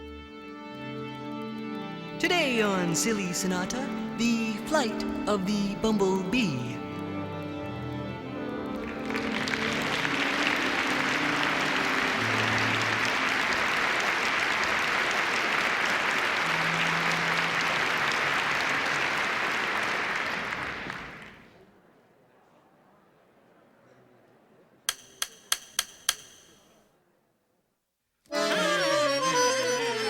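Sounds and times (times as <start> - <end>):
low musical notes: 0.0 - 14.2, 28.3 - 30.0
applause: 8.6 - 21.6.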